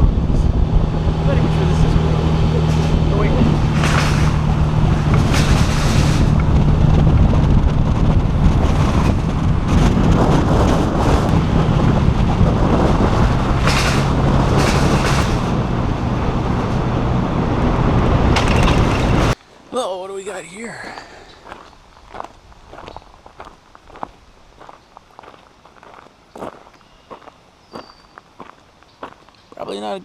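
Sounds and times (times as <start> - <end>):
car engine hum: 0.0 - 19.4
tyre noise: 0.0 - 19.4
wind rush: 0.0 - 19.4.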